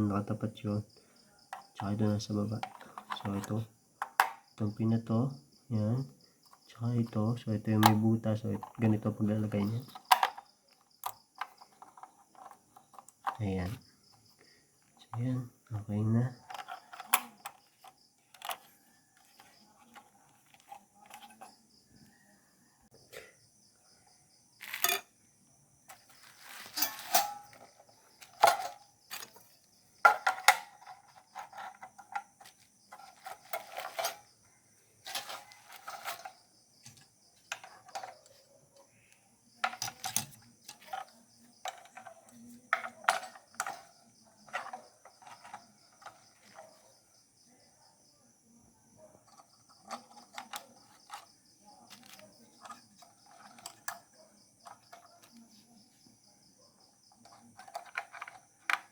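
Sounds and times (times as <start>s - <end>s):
computer hardware clicks and clinks: 24.6s - 25.1s, 39.6s - 41.1s.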